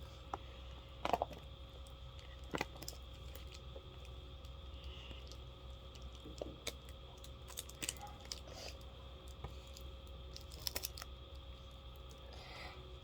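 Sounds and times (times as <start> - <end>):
package wrapping clicks and crinkles: 5.9 - 11.2.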